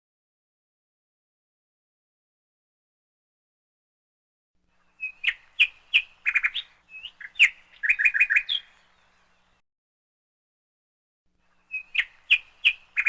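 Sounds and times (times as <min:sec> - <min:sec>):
small bird chirping: 0:04.8 - 0:09.6, 0:11.4 - 0:13.0.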